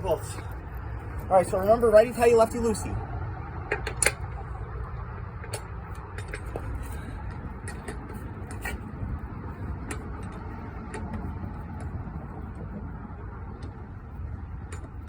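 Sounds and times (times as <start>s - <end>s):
lug wrench clicking: 3.6s - 4.4s, 5.4s - 9.0s.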